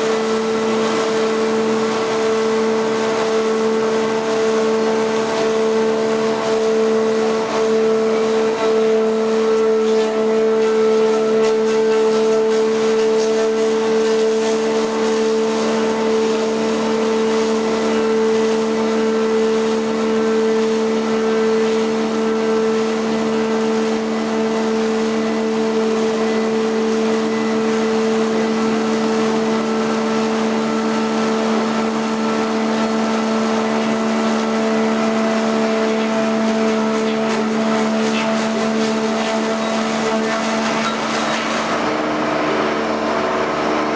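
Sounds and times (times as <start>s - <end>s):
machine whine: 0.0s - 43.9s.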